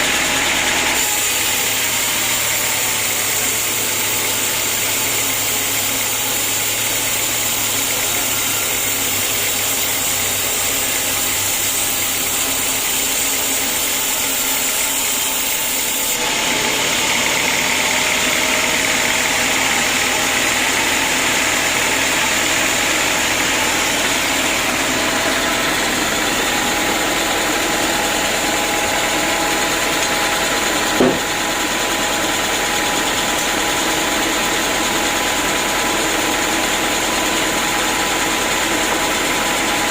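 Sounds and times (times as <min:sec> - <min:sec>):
sawmill machinery running: 0:00.0 - 0:39.9
short knock: 0:31.0 - 0:31.3.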